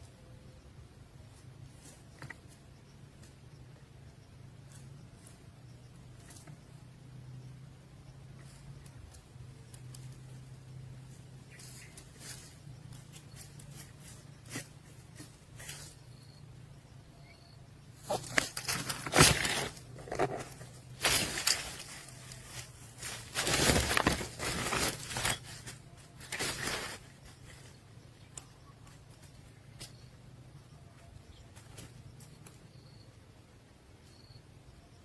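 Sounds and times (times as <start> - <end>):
steady low hum: 0.0 - 35.0
nestlings scuffling and rustling: 8.4 - 16.2, 18.0 - 28.0.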